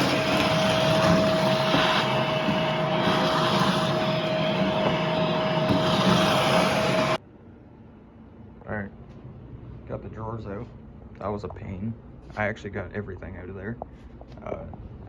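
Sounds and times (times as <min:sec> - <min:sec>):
loud rushing machine noise: 0:00.0 - 0:07.2
constant whine: 0:00.0 - 0:13.3.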